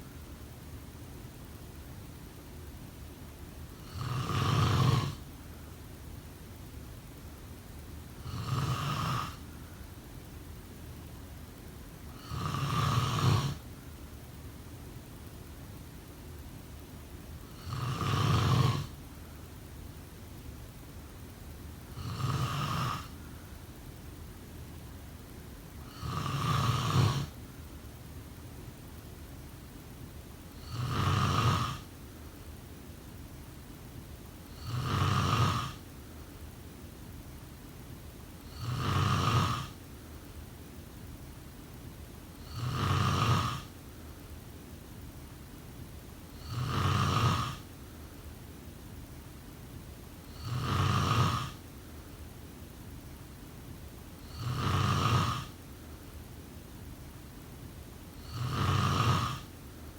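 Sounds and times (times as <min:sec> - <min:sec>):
faint steady hiss: 0:00.0 - 0:59.9
person snoring: 0:03.8 - 0:05.2, 0:08.2 - 0:09.4, 0:12.1 - 0:13.6, 0:17.5 - 0:19.0, 0:21.9 - 0:23.2, 0:25.8 - 0:27.4, 0:30.6 - 0:31.9, 0:34.5 - 0:35.8, 0:38.4 - 0:39.8, 0:42.4 - 0:43.7, 0:46.3 - 0:47.6, 0:50.3 - 0:51.6, 0:54.2 - 0:55.6, 0:58.2 - 0:59.5.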